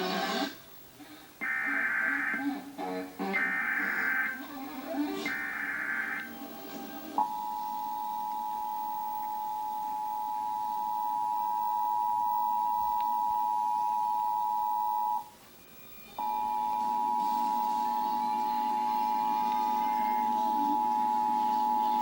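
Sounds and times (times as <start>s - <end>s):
two-tone alert alarm: 1.4s - 2.4s, 3.3s - 4.5s, 5.3s - 6.3s, 7.2s - 15.3s, 16.2s - 22.0s.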